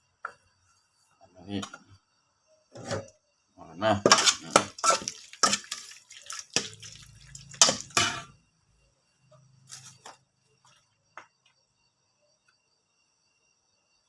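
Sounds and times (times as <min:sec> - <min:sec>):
utensils clinking against pot: 0:04.1 - 0:08.3
liquid dripping: 0:05.0 - 0:07.9.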